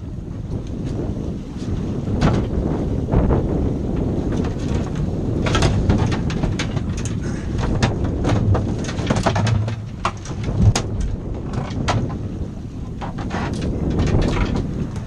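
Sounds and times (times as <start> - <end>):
boat engine rumble: 0.0 - 15.0
wind on microphone: 0.0 - 15.0
short knocks and clatters: 4.3 - 12.2, 13.0 - 15.0.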